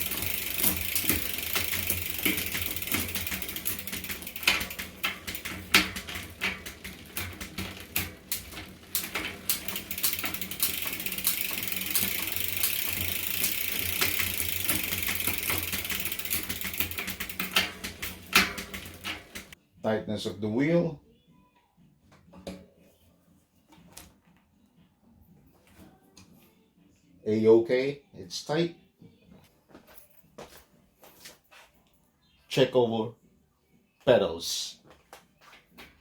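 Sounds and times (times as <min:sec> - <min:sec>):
bike chain running over cogs: 0:00.0 - 0:19.6
rear hub ratcheting: 0:00.0 - 0:19.6.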